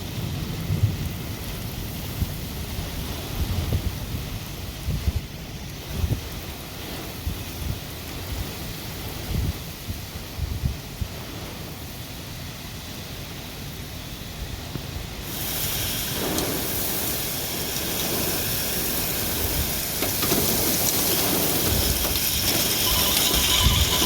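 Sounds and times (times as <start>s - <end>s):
heavy storm rain: 0.0s - 24.0s
wind: 0.0s - 24.0s
low rumbling: 16.1s - 24.0s.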